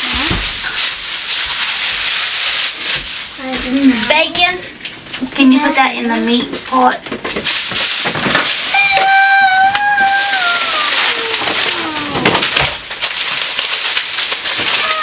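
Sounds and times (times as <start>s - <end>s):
plastic bags crinkling: 0.0s - 15.0s
long drawn-out cry: 8.8s - 12.4s, 14.8s - 15.0s.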